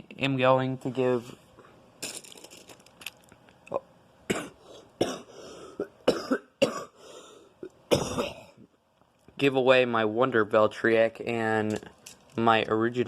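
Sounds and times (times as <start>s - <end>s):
person coughing harshly: 4.3s - 7.1s, 7.9s - 8.6s.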